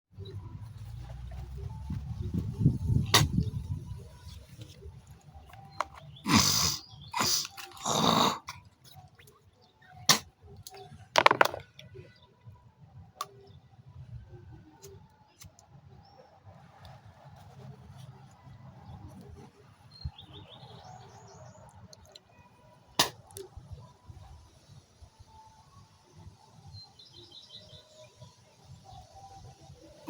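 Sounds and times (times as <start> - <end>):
woman hocking phlegm and spitting: 6.2 - 8.6.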